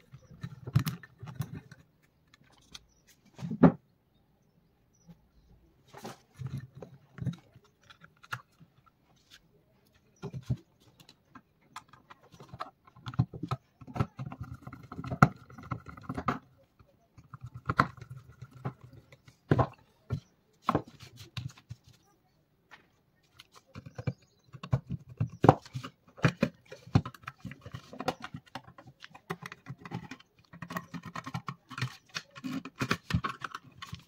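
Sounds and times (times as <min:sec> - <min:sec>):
hand tools clicking and tapping: 0:10.0 - 0:21.5, 0:23.4 - 0:34.0.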